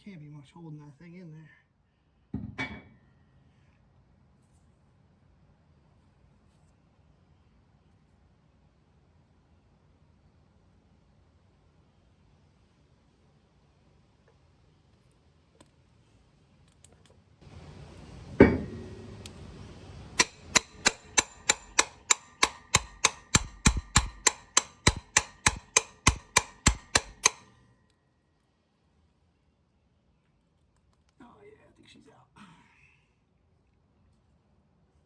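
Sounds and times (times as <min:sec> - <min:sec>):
hammer striking metal: 0:18.4 - 0:19.3, 0:20.2 - 0:27.6.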